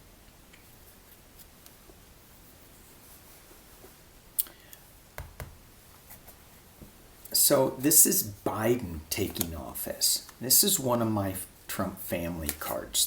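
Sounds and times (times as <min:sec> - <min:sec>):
cards clicking and tapping: 0:12.4 - 0:12.7.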